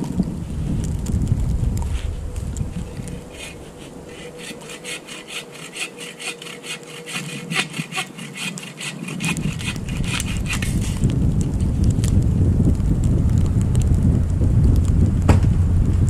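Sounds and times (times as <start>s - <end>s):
hand saw cutting log: 2.8s - 11.0s.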